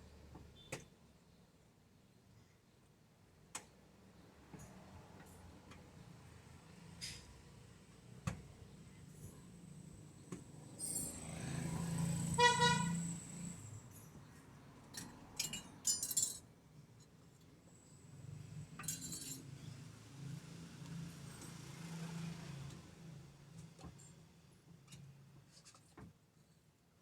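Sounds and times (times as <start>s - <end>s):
short high horn tone: 12.4s - 13.2s
metal tools clinking and rattling: 14.9s - 16.4s, 18.8s - 19.5s.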